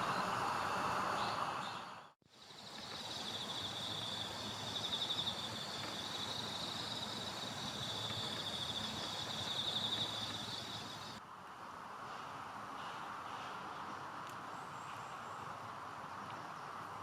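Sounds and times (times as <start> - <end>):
insects trilling: 0.0 - 11.2.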